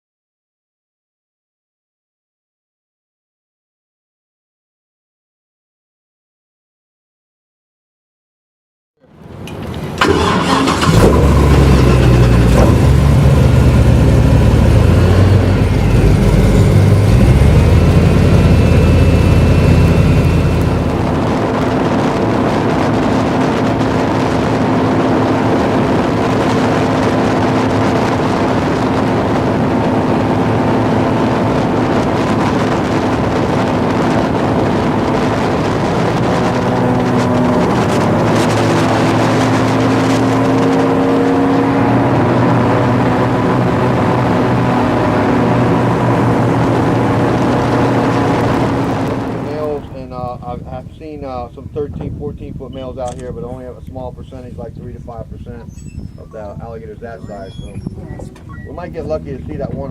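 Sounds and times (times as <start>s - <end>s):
airboat engine and propeller: 9.1s - 59.9s.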